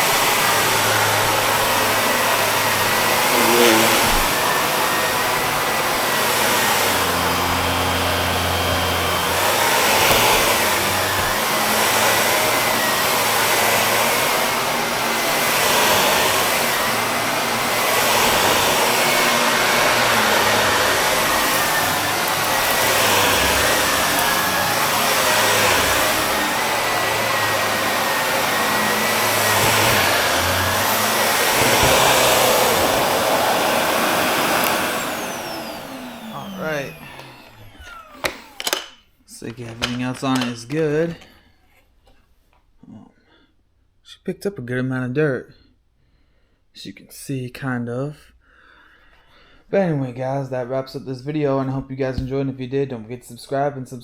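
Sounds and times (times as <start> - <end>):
vacuum cleaner whine: 0.0 - 40.6.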